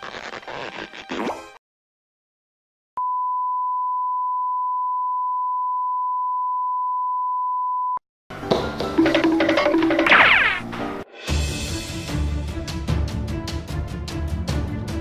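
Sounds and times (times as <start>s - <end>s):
music: 8.3s - 15.0s.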